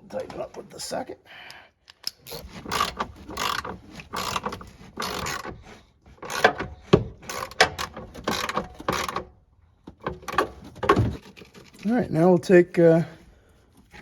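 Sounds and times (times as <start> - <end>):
socket ratchet clicking: 1.9 - 5.5, 6.2 - 6.6.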